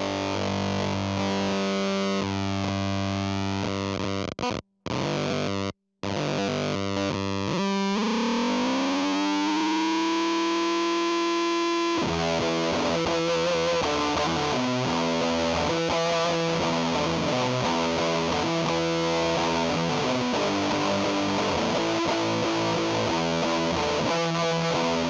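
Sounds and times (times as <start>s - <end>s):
fuzzy electric guitar riffing: 0.0s - 25.0s.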